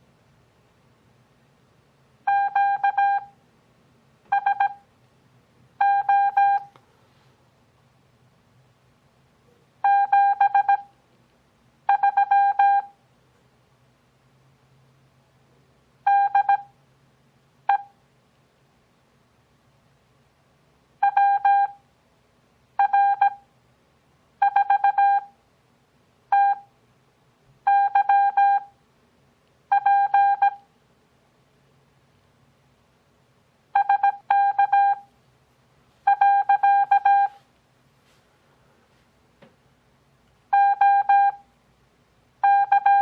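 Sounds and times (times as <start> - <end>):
morse code beeps: 2.3 - 3.3, 4.3 - 4.8, 5.8 - 6.7, 9.8 - 10.9, 11.9 - 13.0, 16.1 - 16.7, 21.0 - 21.8, 22.8 - 23.4, 24.4 - 25.3, 26.3 - 26.7, 27.7 - 28.7, 29.7 - 30.6, 33.8 - 35.1, 36.0 - 37.4, 40.5 - 41.4, 42.4 - 43.0.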